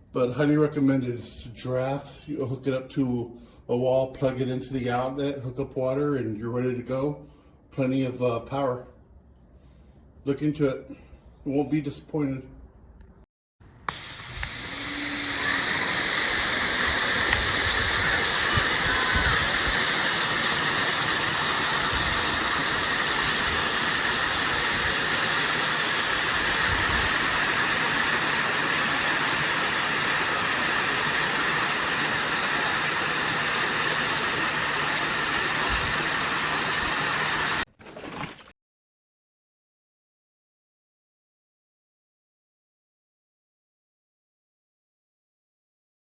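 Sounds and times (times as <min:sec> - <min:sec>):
pressure washer water jet hissing: 0:13.8 - 0:37.7.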